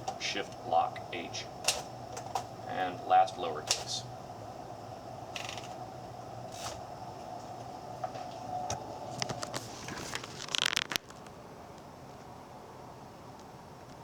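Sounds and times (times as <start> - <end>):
typewriter clicking: 0.0 - 2.5, 3.4 - 4.0, 5.4 - 5.8
faint steady hum: 0.0 - 14.0.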